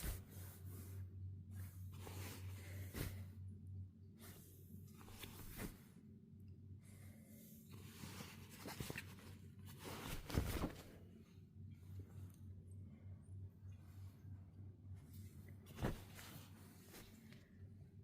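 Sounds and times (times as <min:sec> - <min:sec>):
low steady hum: 0:00.0 - 0:18.0
rustling and scratching: 0:04.2 - 0:05.9, 0:07.7 - 0:11.1, 0:15.0 - 0:17.5.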